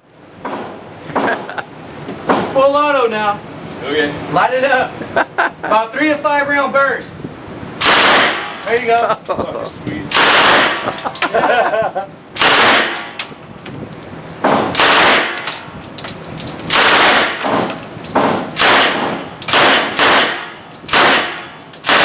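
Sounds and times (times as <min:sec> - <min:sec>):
automatic gunfire bursts: 0:07.8 - 0:08.6, 0:10.1 - 0:10.8, 0:12.4 - 0:13.1, 0:14.8 - 0:15.4, 0:16.7 - 0:17.6, 0:18.6 - 0:22.0.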